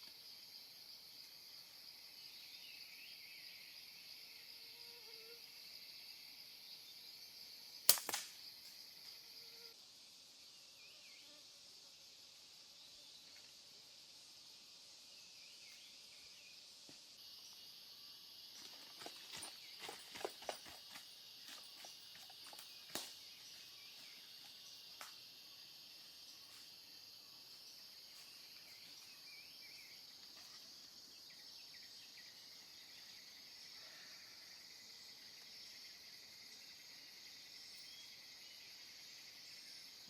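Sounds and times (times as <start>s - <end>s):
forest insects buzzing: 0.0s - 40.0s
gunshot crack: 7.9s - 8.3s.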